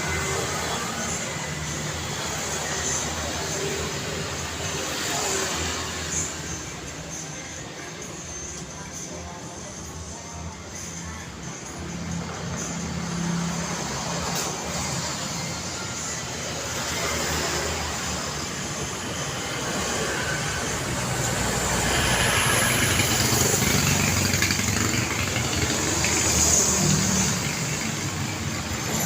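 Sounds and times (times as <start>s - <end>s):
passing cars engine and tyre noise: 11.2s - 29.0s.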